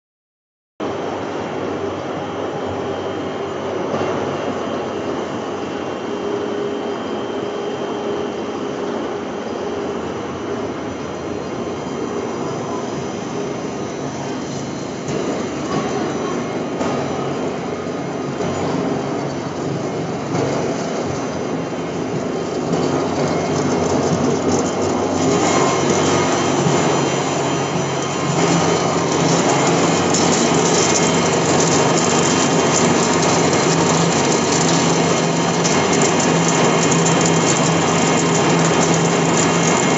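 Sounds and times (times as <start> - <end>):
pellet mill machine humming: 0.8 - 39.9.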